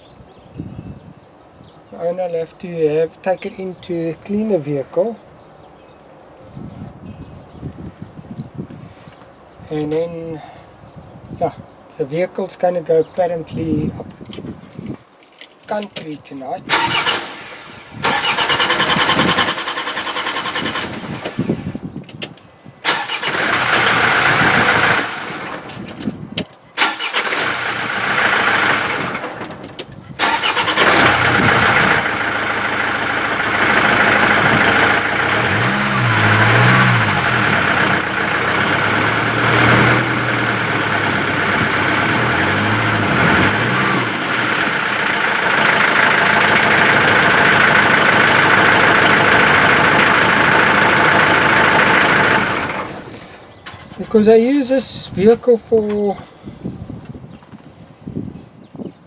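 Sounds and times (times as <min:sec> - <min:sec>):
diesel engine running: 0:16.7 - 0:21.8, 0:22.9 - 0:26.0, 0:26.8 - 0:53.5.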